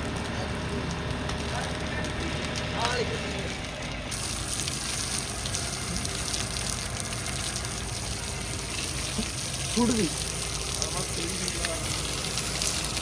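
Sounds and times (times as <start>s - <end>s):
water splashing in a bucket: 4.1s - 13.0s.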